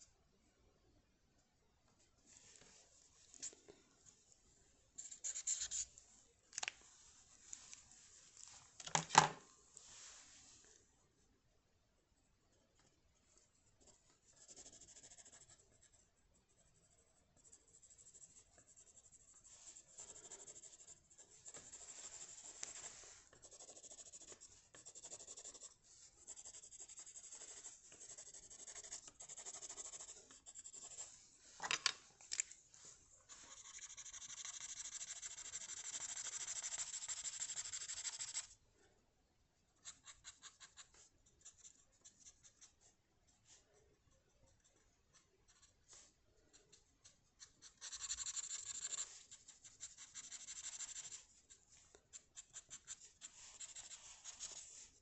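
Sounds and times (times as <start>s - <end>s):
pencil scratching on paper: 5.0s - 5.9s, 13.8s - 31.2s, 33.3s - 38.5s, 39.8s - 43.6s, 44.5s - 55.0s.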